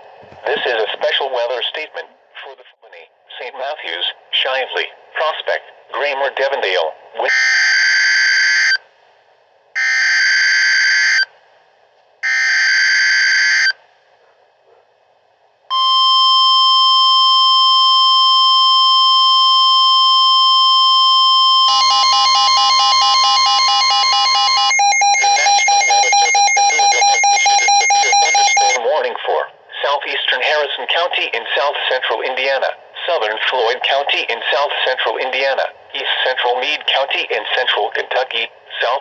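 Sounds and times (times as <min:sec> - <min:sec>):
steady weather-radio alert tone: 0:00.5 - 0:07.7, 0:19.6 - 0:39.0
harsh two-tone attention signal: 0:15.7 - 0:28.8
screeching digital data tones: 0:21.6 - 0:28.8.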